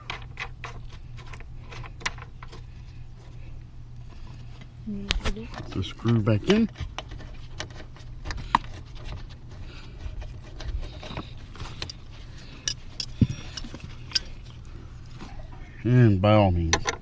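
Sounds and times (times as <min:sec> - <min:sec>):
tools clicking and clinking: 0:11.0 - 0:14.6.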